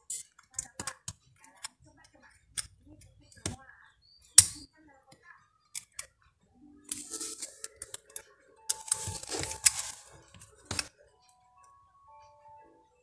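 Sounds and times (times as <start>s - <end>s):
faint steady tones: 0.0s - 13.0s
sharp metal tool clicks: 4.4s - 4.7s.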